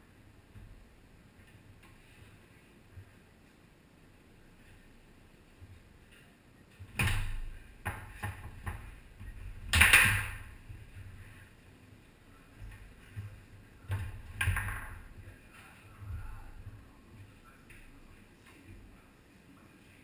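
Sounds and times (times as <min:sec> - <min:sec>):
foosball ball clacking and knocking: 0:07.0 - 0:10.9, 0:13.9 - 0:15.1.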